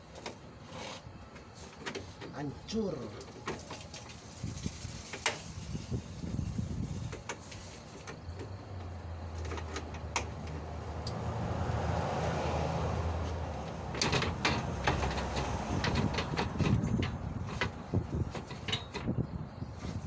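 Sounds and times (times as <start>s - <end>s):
sharp clicks and knocks: 13.3s - 19.3s.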